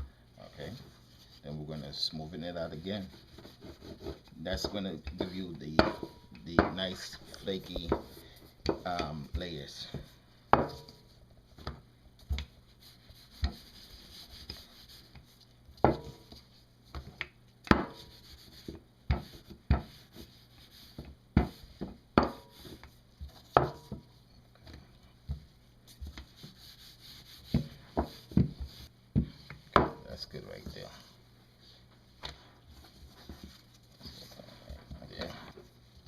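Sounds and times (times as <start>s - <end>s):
rolling pin rolling dough: 0.7s - 36.0s
rolling pin knocking on board: 21.4s - 22.5s, 23.5s - 24.0s, 27.5s - 30.0s.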